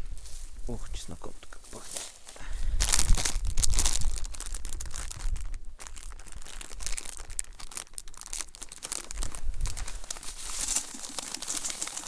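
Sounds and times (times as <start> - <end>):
crinkling and rustling from handling: 1.7 - 12.0
wind buffeting microphone: 2.5 - 7.4, 9.1 - 10.4.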